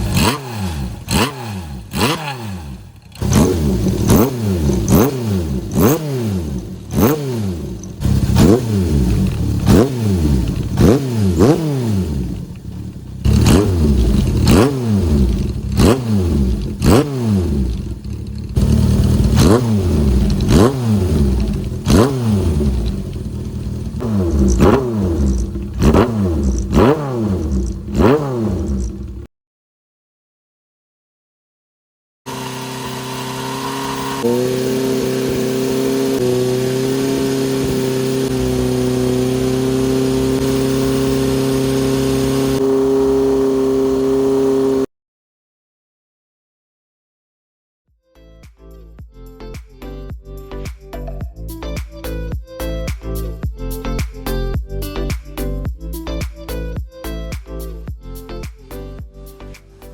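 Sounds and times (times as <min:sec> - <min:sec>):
motorcycle engine idling: 0:00.0 - 0:28.0, 0:28.6 - 0:29.3
motorcycle engine revving: 0:00.0 - 0:29.3, 0:32.3 - 0:44.9.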